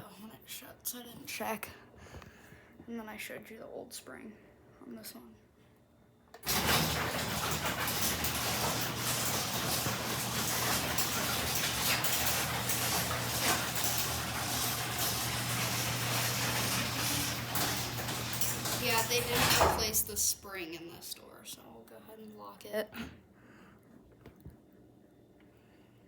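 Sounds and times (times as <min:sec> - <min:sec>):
door rattling and clicking: 0:06.4 - 0:20.3
garage door opener motor hum: 0:06.4 - 0:20.4.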